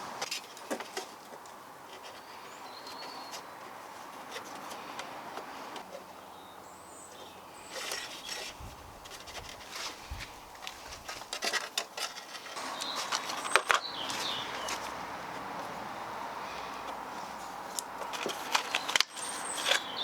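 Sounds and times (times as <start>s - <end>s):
bird chirping faintly: 12.6s - 15.0s
hands clicking and tapping on wiring: 17.6s - 20.0s.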